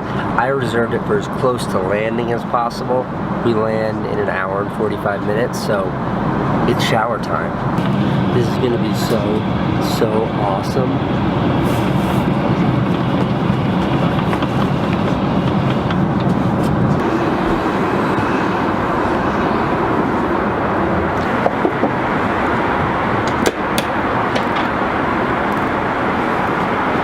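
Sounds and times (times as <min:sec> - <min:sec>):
airliner cabin noise: 0:00.0 - 0:27.0
low hum: 0:07.4 - 0:27.0.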